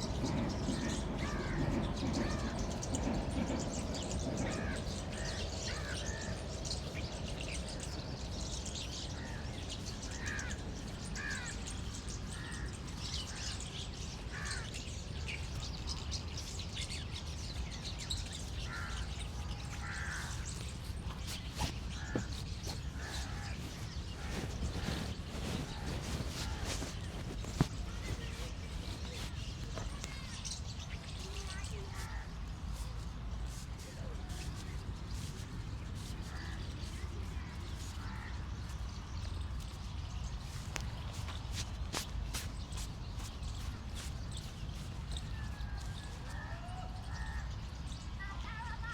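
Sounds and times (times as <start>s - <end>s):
birds calling: 0.0s - 32.3s.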